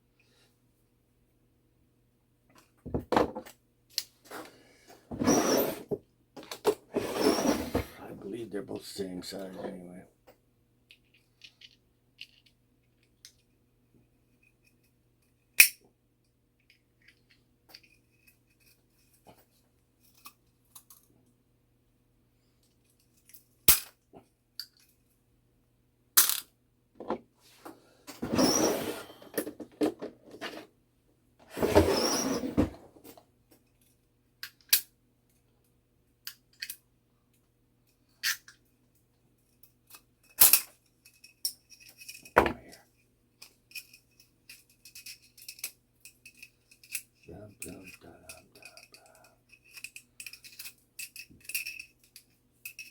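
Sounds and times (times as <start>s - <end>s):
small metal parts clicking: 10.9s - 13.4s, 43.4s - 52.9s
scraping rattling handling noise: 28.1s - 30.7s.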